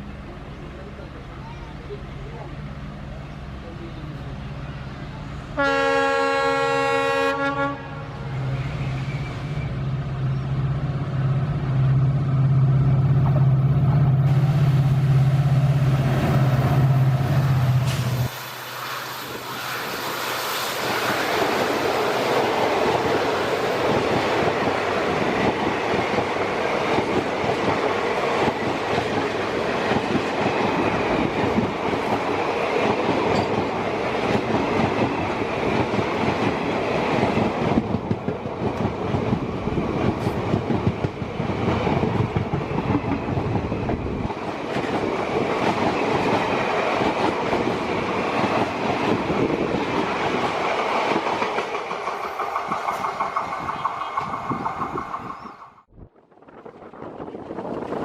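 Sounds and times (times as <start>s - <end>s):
train rattling along track: 0.0s - 58.0s
locomotive horn: 5.5s - 8.4s.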